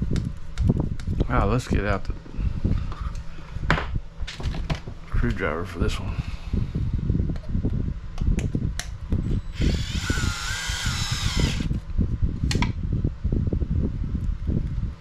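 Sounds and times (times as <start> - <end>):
low rumbling: 0.0 - 15.0
electric screwdriver motor whining: 9.5 - 11.8.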